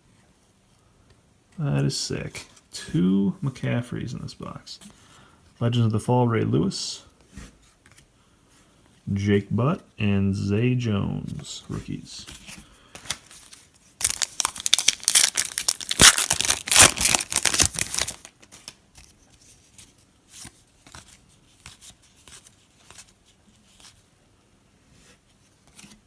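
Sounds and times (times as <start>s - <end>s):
cards rustling and ticking: 11.8s - 24.0s
plastic wrapper tearing and crinkling: 13.0s - 18.8s.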